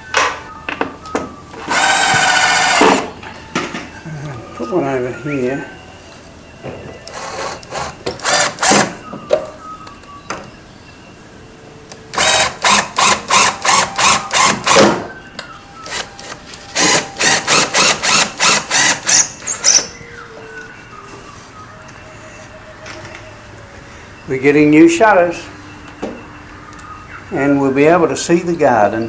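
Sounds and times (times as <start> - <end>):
cordless drill driving screws: 1.6 - 3.1, 7.1 - 9.0, 12.1 - 14.9, 15.9 - 19.8.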